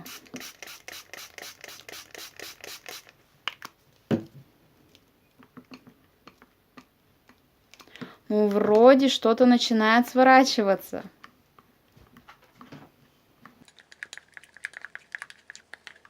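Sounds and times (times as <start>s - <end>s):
spray bottle puffs: 0.0s - 3.1s.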